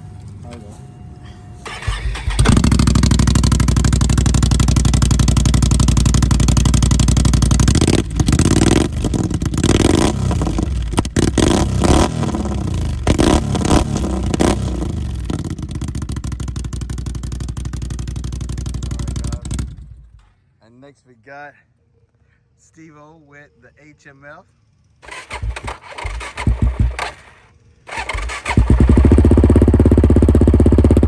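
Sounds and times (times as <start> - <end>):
atv engine idling and revving: 1.6 - 20.2, 25.0 - 27.3, 27.9 - 31.0.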